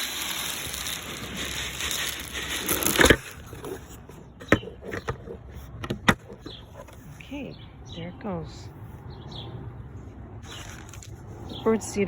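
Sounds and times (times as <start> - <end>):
bird feeder rattling and scraping: 0.0 - 7.1.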